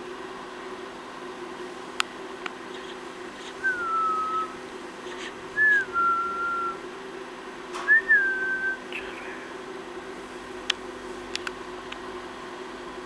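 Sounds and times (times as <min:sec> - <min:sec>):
person whistling: 0:03.6 - 0:04.6, 0:05.6 - 0:06.8, 0:07.9 - 0:08.9.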